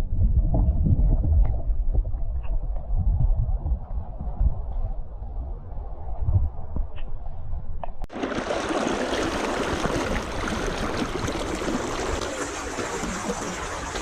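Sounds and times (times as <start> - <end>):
low rumble: 0.0 - 8.1
stream flowing: 8.1 - 14.0.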